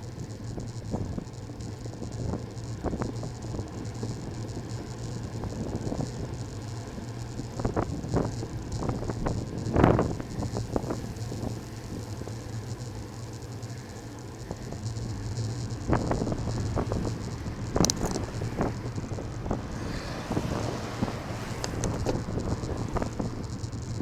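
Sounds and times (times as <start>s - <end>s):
road noise: 0.0s - 24.0s
steady low hum: 0.0s - 24.0s
wind on microphone: 6.9s - 12.1s, 14.4s - 24.0s.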